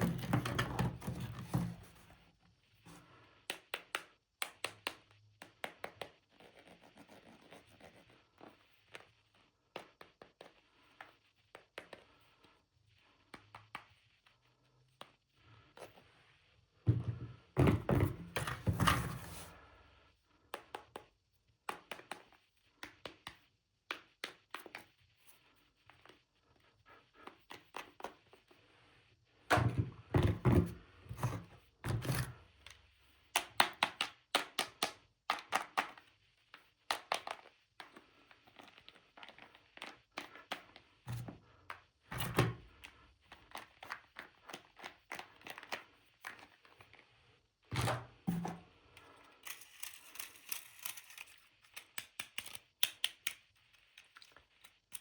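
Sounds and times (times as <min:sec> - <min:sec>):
plastic toy pieces clicking: 0:49.4 - 0:55.0.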